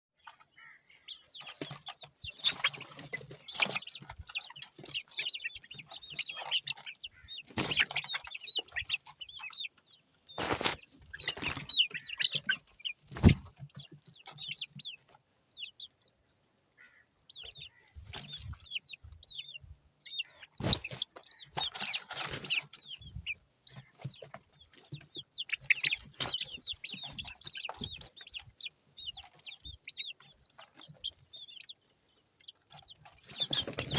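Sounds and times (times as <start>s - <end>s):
birds chirping and clucking: 0.2s - 33.9s
bumps and rustles: 10.4s - 13.9s.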